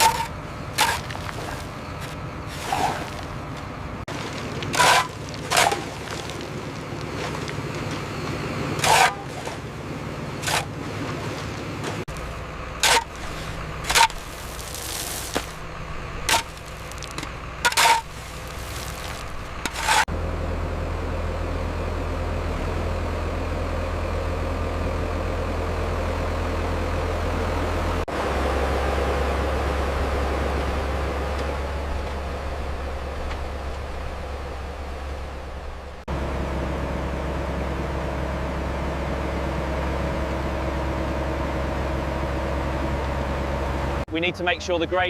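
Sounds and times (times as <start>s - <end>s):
construction machinery engine drone: 0.0s - 45.0s.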